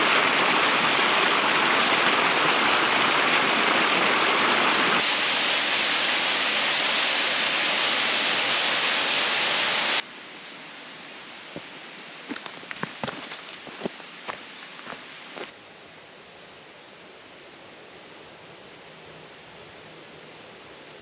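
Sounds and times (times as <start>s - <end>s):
lighter rush of water: 0.0s - 10.0s
waterfall roaring: 0.0s - 10.0s.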